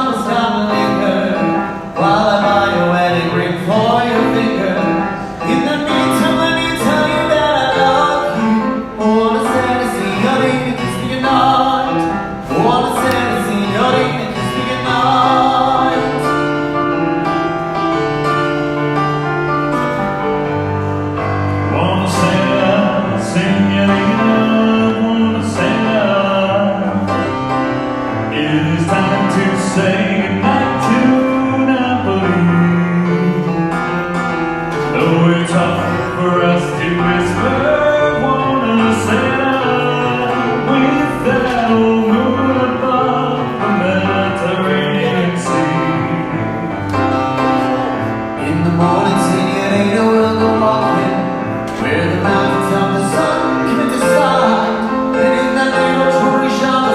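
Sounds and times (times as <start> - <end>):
person singing with band: 0.0 - 16.8, 34.7 - 56.9.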